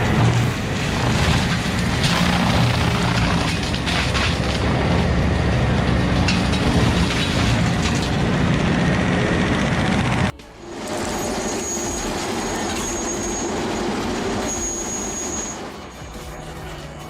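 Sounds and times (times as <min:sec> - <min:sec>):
wood cracking: 0:00.0 - 0:08.7
stump grinder grinding wood: 0:00.0 - 0:15.1.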